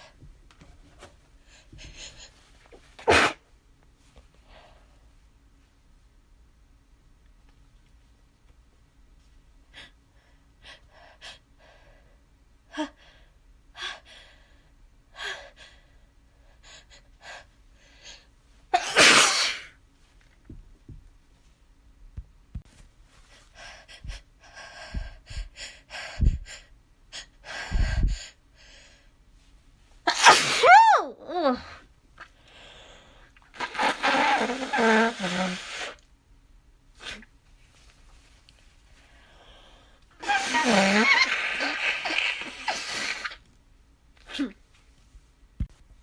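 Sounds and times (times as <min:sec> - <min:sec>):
person sneezing: 0:03.0 - 0:03.4, 0:18.8 - 0:19.7, 0:30.1 - 0:31.8, 0:33.6 - 0:36.0, 0:40.2 - 0:43.4, 0:44.2 - 0:44.7
person sniffing: 0:03.0 - 0:03.4, 0:33.6 - 0:36.0, 0:40.2 - 0:43.4.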